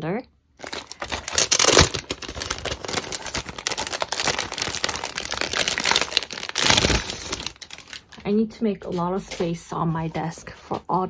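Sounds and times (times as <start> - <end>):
crinkly packaging rustling: 0.6 - 11.0.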